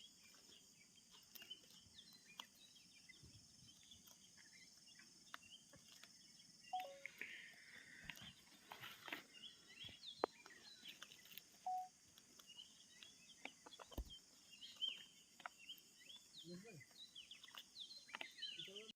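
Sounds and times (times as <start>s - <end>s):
birds chirping: 0.0s - 18.9s
lower bird call: 6.7s - 8.4s, 11.6s - 11.9s.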